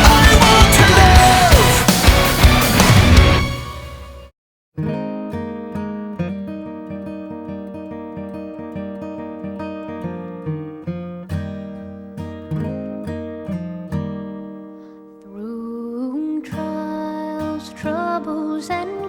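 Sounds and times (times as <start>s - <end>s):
person singing: 0.0s - 3.5s
acoustic guitar strumming: 0.0s - 15.3s.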